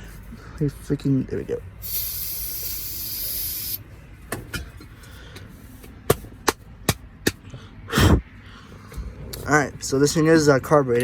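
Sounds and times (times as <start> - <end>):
aerosol can spraying hiss: 1.8 - 3.8.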